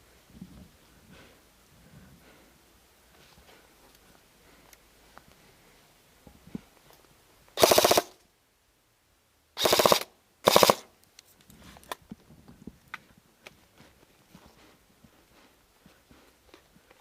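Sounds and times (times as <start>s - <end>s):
airsoft gun bursts: 7.6s - 8.2s, 9.6s - 10.9s.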